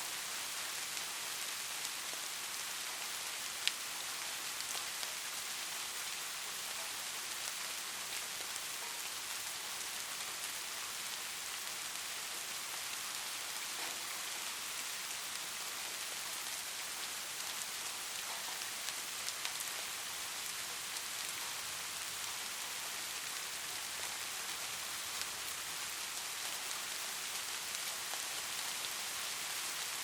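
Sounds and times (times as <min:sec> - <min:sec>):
steady rain falling: 0:00.0 - 0:30.0.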